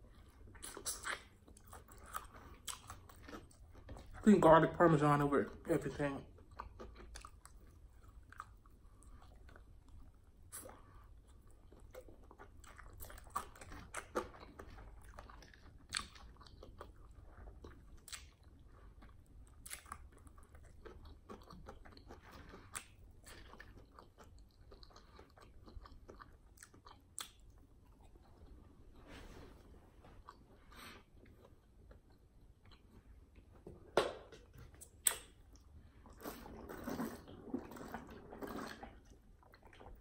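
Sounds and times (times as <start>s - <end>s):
chewing and crunching: 0.0s - 29.0s, 30.1s - 33.4s, 34.4s - 40.0s.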